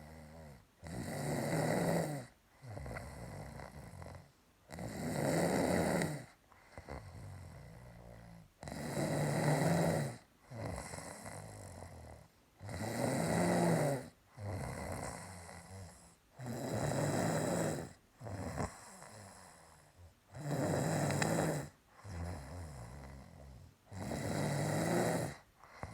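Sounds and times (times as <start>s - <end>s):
quiet breath: 0.0s - 0.9s, 2.1s - 4.7s, 6.0s - 9.2s, 14.0s - 25.9s
person snoring: 0.0s - 25.9s.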